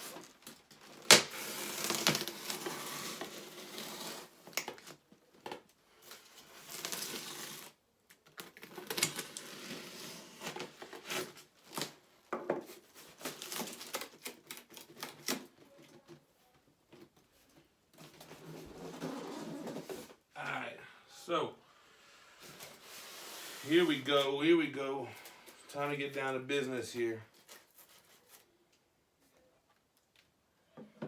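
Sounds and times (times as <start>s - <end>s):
packaging rustling and scraping: 0.0s - 20.2s, 22.3s - 24.3s, 27.3s - 28.6s.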